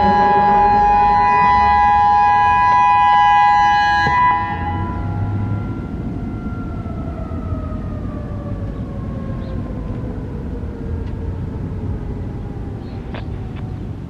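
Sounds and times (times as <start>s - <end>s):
electronic siren winding down: 0.0s - 8.0s
low rumble: 4.0s - 14.0s.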